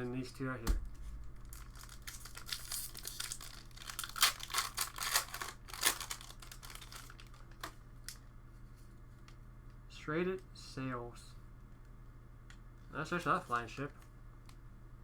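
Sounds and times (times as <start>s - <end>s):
foil wrapper tearing and crinkling: 1.4s - 8.2s.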